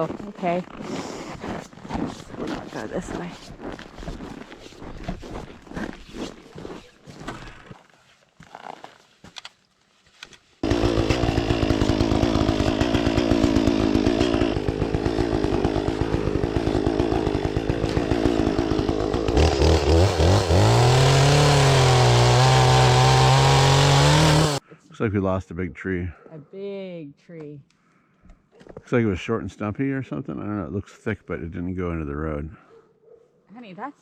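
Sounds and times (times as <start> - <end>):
chainsaw engine running: 10.6 - 24.6.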